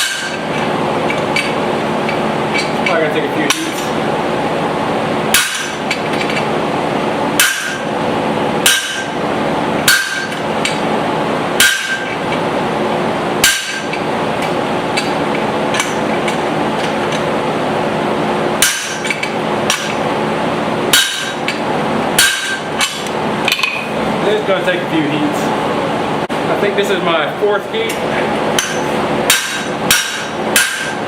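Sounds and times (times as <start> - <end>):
hammer striking hot steel: 0.0 - 2.7, 5.3 - 6.4, 7.4 - 7.9, 8.6 - 9.2, 9.8 - 10.8, 11.6 - 12.2, 13.4 - 16.0, 18.6 - 20.0, 20.9 - 21.6, 22.2 - 23.8, 28.6 - 31.0
fan humming: 0.0 - 31.0.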